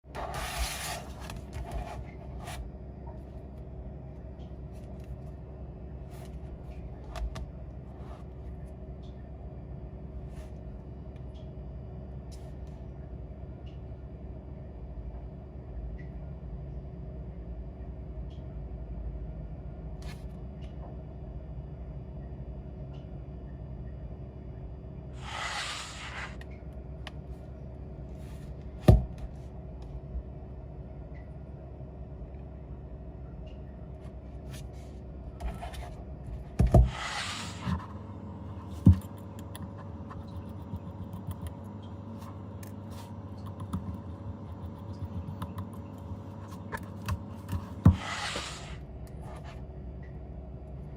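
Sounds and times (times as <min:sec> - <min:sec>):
steady hum: 0:21.1 - 0:50.9
short hisses: 0:25.2 - 0:26.4.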